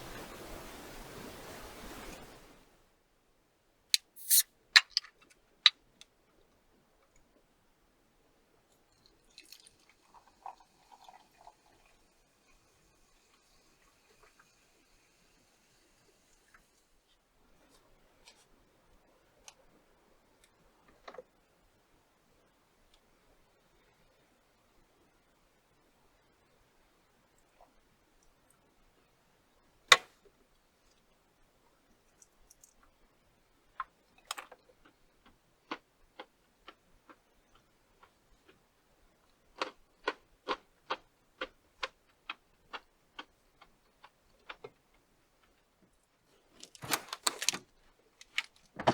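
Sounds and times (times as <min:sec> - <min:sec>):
steady hiss: 0:04.0 - 0:05.0
sharp clicks and crackles: 0:04.0 - 0:05.4.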